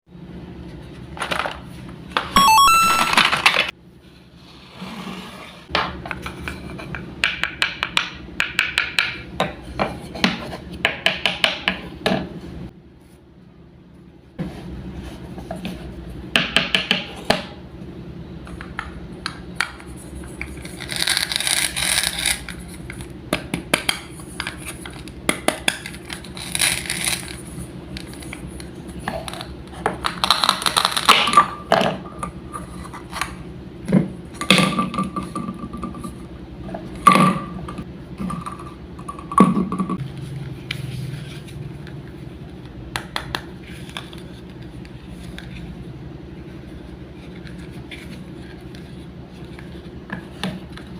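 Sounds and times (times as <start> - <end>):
short high pings: 2.4 - 3.2.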